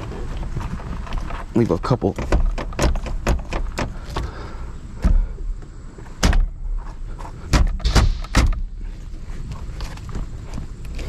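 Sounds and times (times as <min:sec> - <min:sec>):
steering wheel knocks and thumps: 0:00.5 - 0:04.3, 0:05.0 - 0:05.3, 0:07.5 - 0:08.7.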